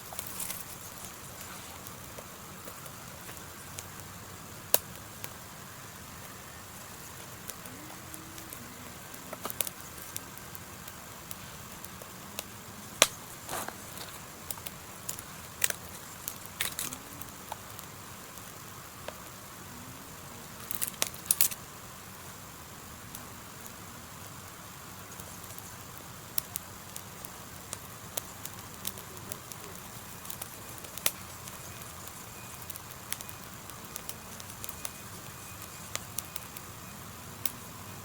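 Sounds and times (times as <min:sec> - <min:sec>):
twigs snapping and crackling: 0:00.0 - 0:04.1, 0:06.2 - 0:19.3, 0:20.6 - 0:21.6, 0:25.1 - 0:36.8
faint steady hiss: 0:00.0 - 0:38.0.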